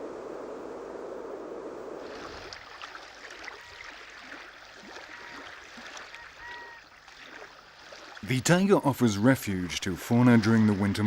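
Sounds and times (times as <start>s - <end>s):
small splashes and drips: 2.0s - 8.4s
water trickling over stones: 2.1s - 11.0s.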